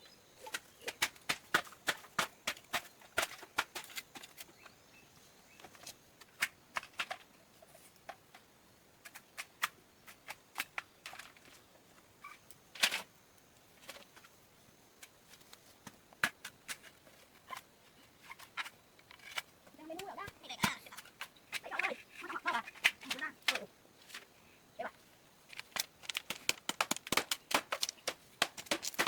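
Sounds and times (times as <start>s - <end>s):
sharp taps and clicks: 25.5s - 29.0s.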